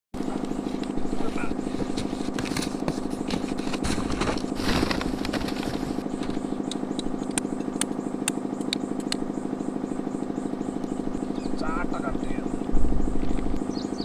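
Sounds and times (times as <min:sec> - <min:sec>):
engine running steadily: 0:00.2 - 0:14.0
sharp clicks: 0:06.2 - 0:09.3.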